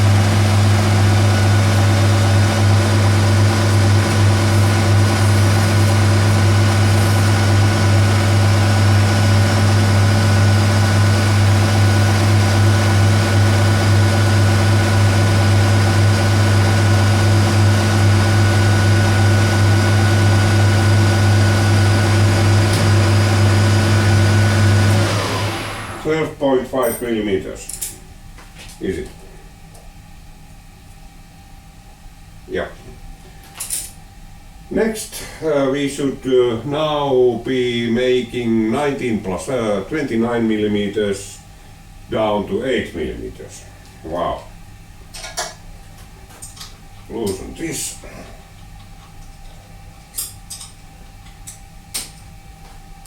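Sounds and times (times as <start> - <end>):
metal lathe humming: 0.0 - 26.1.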